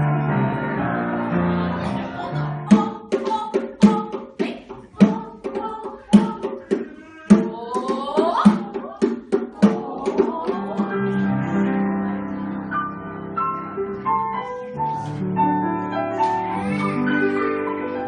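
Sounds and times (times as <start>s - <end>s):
drum beating steadily: 2.7s - 11.0s.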